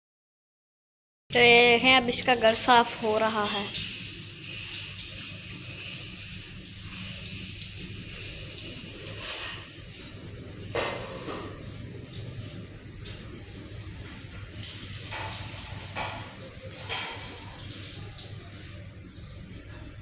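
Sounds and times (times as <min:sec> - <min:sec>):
tap water running: 0:01.3 - 0:20.0
light knocks and clatters: 0:15.1 - 0:17.5.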